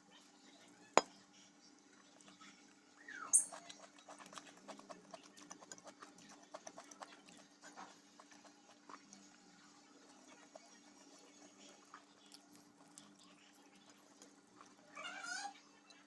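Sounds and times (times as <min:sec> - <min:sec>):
chewing and lip-smacking: 0:03.5 - 0:16.0.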